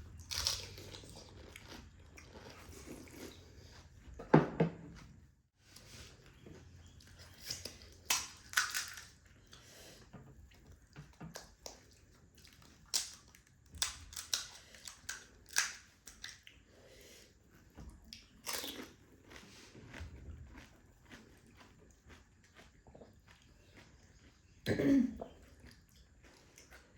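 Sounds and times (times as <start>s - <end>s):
crisp shells crunching in mouth: 8.0s - 9.2s
wet chewing: 17.4s - 26.9s.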